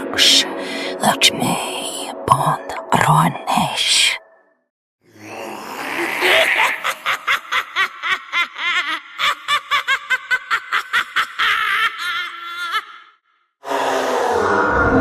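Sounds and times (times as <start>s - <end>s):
high-pitched cackling laugh: 6.2s - 13.0s.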